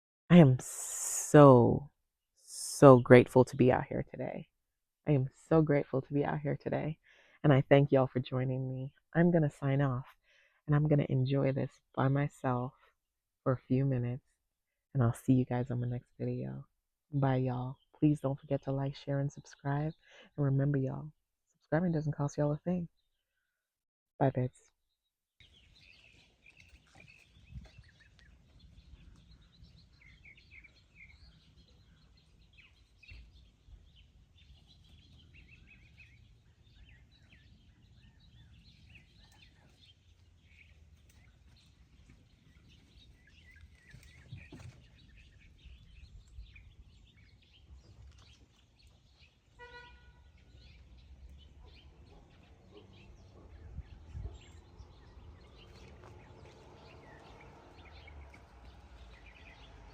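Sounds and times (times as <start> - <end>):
birds chirping and singing: 25.4 - 59.9.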